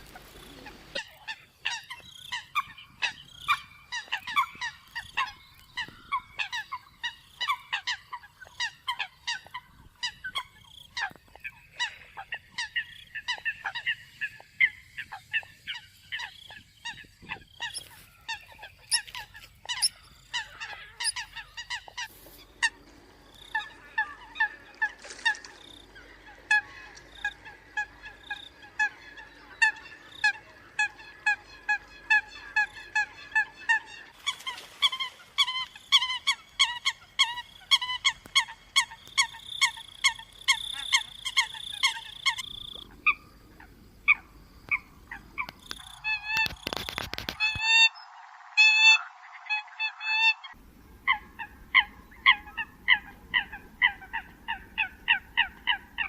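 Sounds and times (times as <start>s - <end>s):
coots honking calls: 0.0s - 47.9s, 48.6s - 56.0s.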